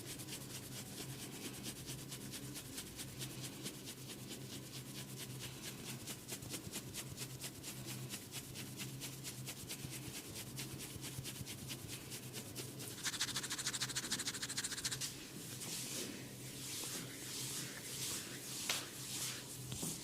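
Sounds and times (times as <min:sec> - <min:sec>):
rhythmic scratching on scalp: 0:00.0 - 0:15.2.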